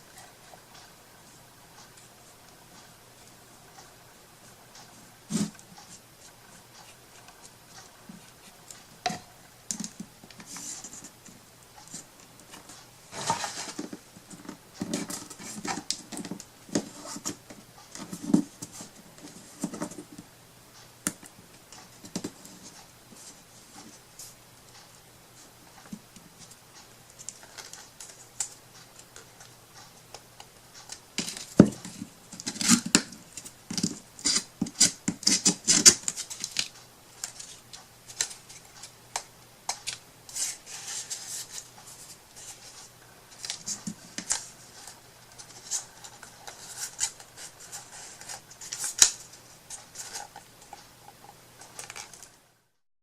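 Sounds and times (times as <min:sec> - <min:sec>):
faint steady hum: 0:00.0 - 0:52.8
hands tapping and scraping craft materials: 0:04.8 - 0:20.3, 0:21.0 - 0:24.3, 0:30.1 - 0:52.4.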